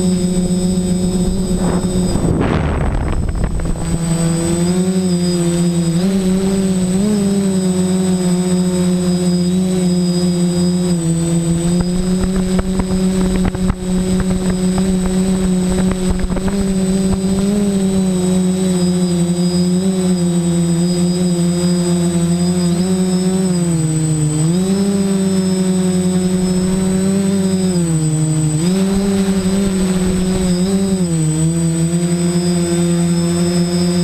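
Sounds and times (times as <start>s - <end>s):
quadcopter motors buzzing: 0.0s - 34.0s
wind buffeting microphone: 0.2s - 4.6s, 11.6s - 18.0s.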